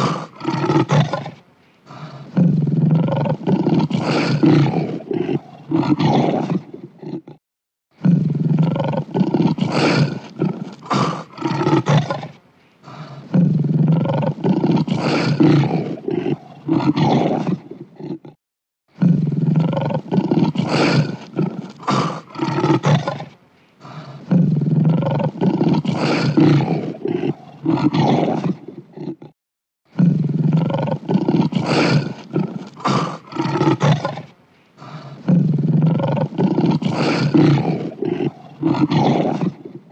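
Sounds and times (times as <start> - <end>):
lion roaring: 0.0 - 7.4, 8.0 - 18.4, 19.0 - 29.3, 30.0 - 39.9.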